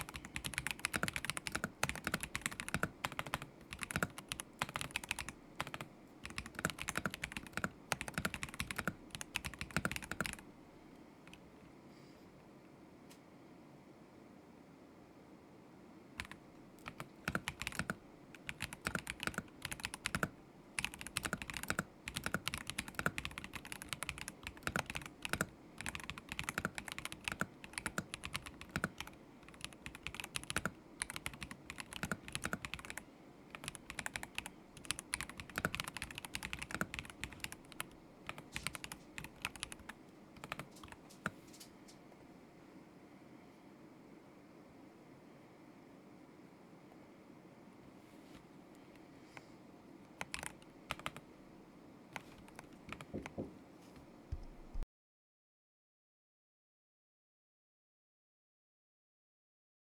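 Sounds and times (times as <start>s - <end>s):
mechanical keyboard typing: 0.0s - 10.4s, 16.2s - 41.7s, 50.1s - 51.2s, 52.2s - 53.4s.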